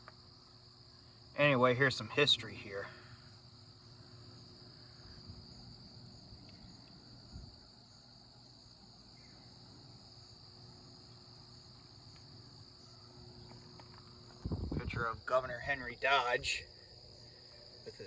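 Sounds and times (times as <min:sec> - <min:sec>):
high-pitched insect chorus: 0:00.0 - 0:18.0.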